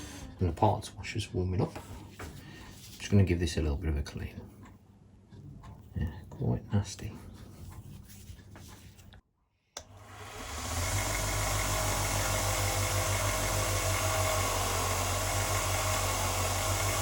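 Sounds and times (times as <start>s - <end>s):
electric power tool running: 9.8s - 17.0s.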